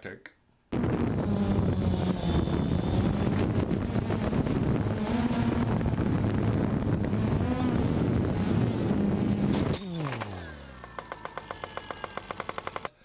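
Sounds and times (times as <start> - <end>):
drone propellers humming: 0.7 - 12.9
wind rush on microphone: 0.8 - 9.8.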